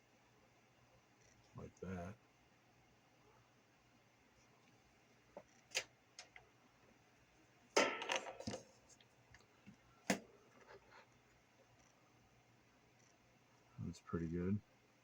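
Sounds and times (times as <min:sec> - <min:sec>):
parts rattling clatter: 0:07.8 - 0:09.0.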